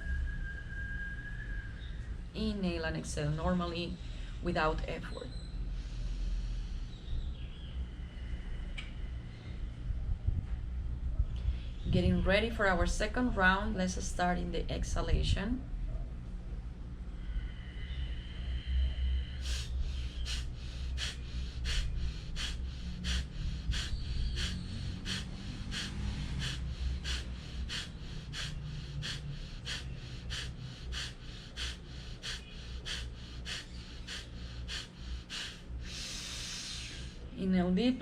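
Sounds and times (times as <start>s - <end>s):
long deep breath: 5.6s - 7.1s, 17.1s - 37.3s
forceful nasal exhalations: 19.4s - 37.2s.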